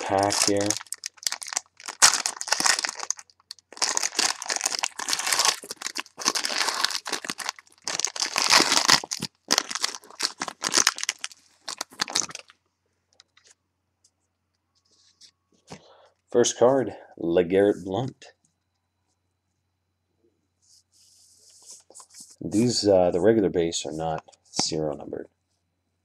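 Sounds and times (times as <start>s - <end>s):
wrapper tearing and crinkling: 0.0s - 12.5s.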